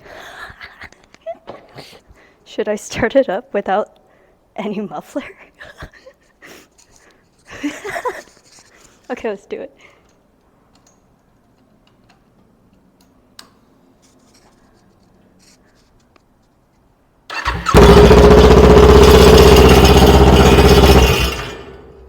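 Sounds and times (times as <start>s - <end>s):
unsilenced motorcycle engine: 17.3s - 22.0s.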